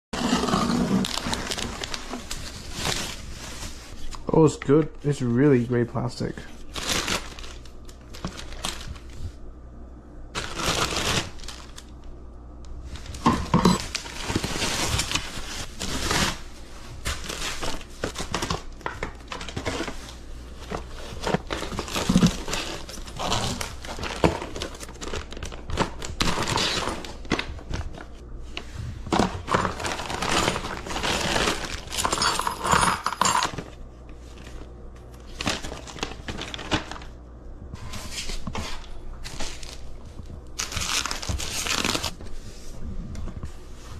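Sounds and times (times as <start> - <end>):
plastic packaging crinkling: 0.2 - 4.8, 6.2 - 9.3, 10.3 - 12.2, 12.8 - 28.2, 29.0 - 32.4, 34.3 - 37.3, 37.9 - 42.4.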